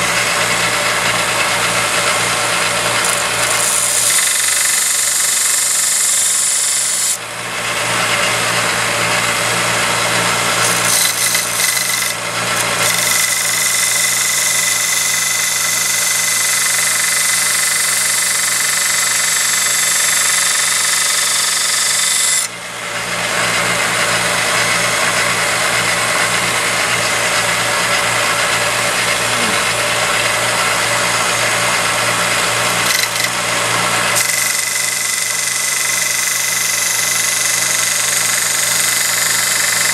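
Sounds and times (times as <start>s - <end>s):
motor hum: 0.0s - 39.9s
belt grinder grinding hiss: 1.6s - 7.1s, 10.4s - 22.4s, 26.3s - 39.9s.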